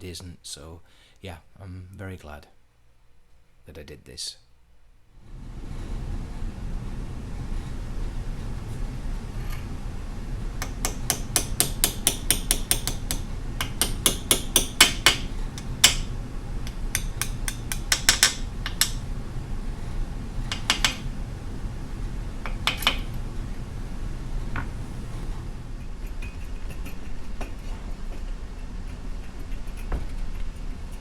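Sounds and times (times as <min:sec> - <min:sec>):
tool tapping on metal: 0:10.6 - 0:19.1, 0:20.4 - 0:21.2, 0:22.4 - 0:23.3.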